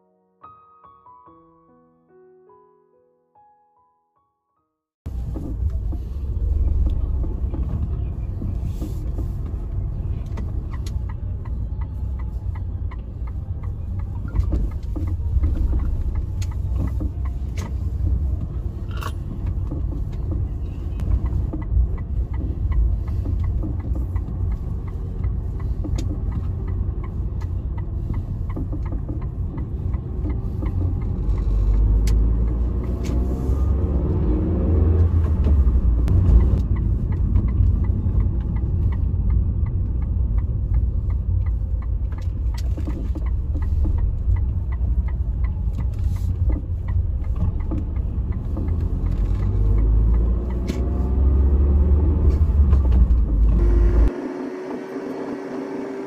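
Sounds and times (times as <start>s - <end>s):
car engine and road noise: 5.0s - 56.0s.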